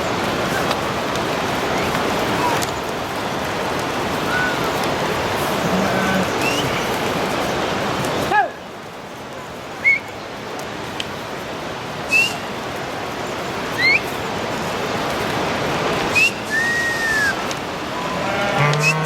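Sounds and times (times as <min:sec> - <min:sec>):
steady rushing noise: 0:00.0 - 0:19.0
sharp whistles: 0:09.8 - 0:10.1, 0:12.1 - 0:12.4, 0:13.8 - 0:14.1, 0:16.1 - 0:17.4.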